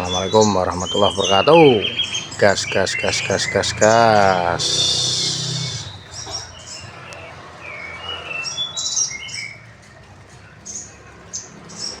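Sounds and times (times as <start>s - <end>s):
falling whistled bird notes: 0.0s - 6.8s
songbirds chirping: 0.0s - 12.0s.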